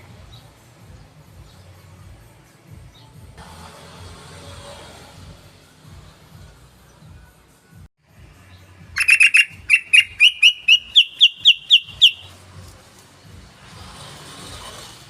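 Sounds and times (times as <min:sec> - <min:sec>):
bird chirping call: 0:09.0 - 0:12.3.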